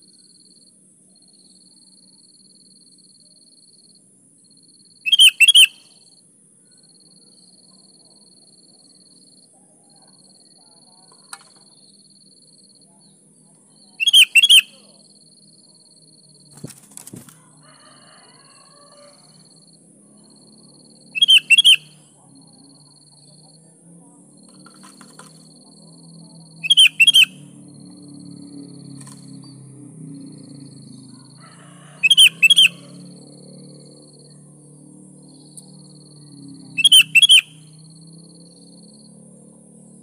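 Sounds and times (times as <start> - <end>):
bird calling: 5.0 - 5.9, 14.0 - 15.0, 21.2 - 22.0, 26.6 - 27.5, 32.0 - 33.1, 36.7 - 37.7.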